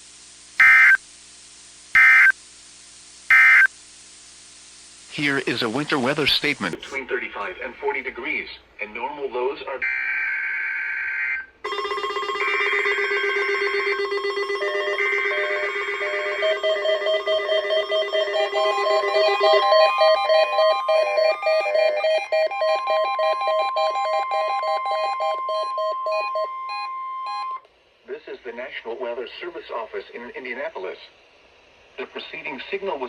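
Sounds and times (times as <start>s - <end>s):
screechy data tones: 0.6s - 1.0s, 1.9s - 2.4s, 3.3s - 3.7s, 12.4s - 27.6s
steady warning alarm tone: 0.6s - 1.0s, 2.0s - 2.4s, 3.3s - 3.7s, 9.8s - 27.6s.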